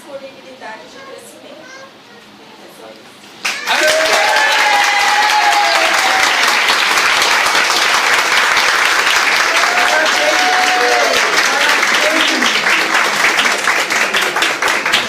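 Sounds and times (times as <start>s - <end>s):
crowd clapping: 3.4s - 15.0s.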